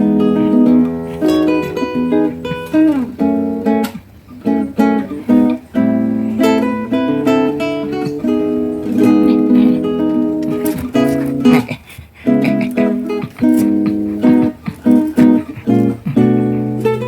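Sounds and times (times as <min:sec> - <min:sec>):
acoustic guitar tune: 0:00.0 - 0:17.0.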